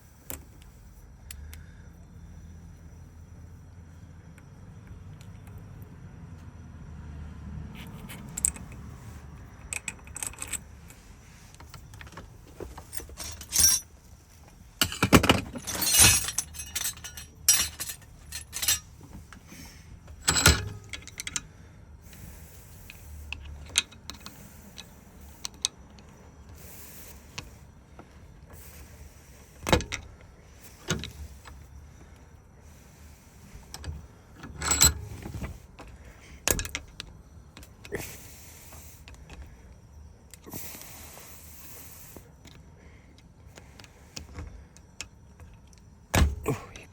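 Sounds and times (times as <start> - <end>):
small metal parts clicking and clinking: 7.8 - 21.5, 22.1 - 27.6, 33.5 - 39.6
metal parts rattling: 9.7 - 21.5, 33.5 - 38.3.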